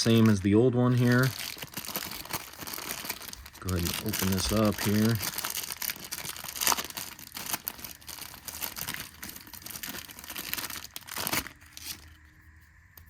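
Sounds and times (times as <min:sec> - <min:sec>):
packaging crinkling and tearing: 0:00.0 - 0:12.3.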